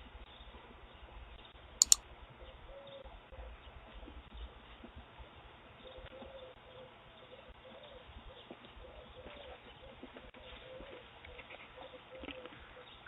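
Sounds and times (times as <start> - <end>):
faint dove cooing: 6.1 - 13.0.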